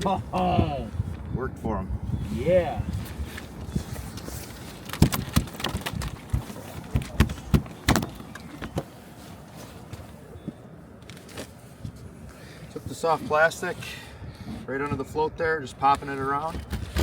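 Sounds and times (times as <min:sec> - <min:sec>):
knocks and clatters: 0:03.7 - 0:08.9.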